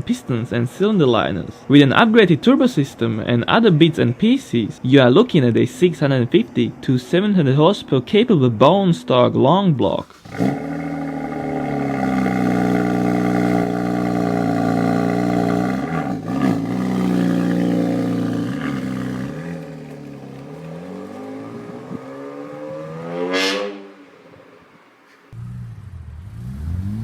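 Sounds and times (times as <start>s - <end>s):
car engine accelerating: 10.0s - 24.7s, 25.3s - 27.0s.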